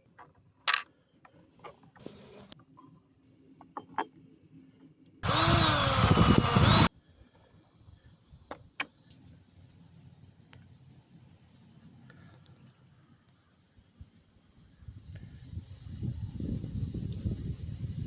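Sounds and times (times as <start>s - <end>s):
small motor whirring: 5.2s - 6.9s.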